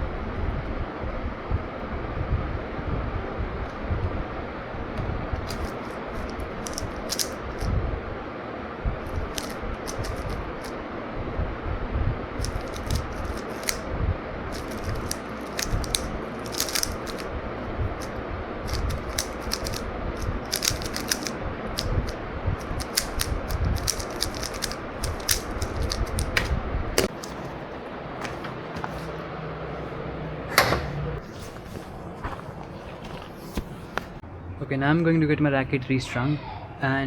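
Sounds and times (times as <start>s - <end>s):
fan airflow buffeting microphone: 0.0s - 36.0s
sharp clicks and taps: 9.1s - 10.7s, 18.0s - 27.4s.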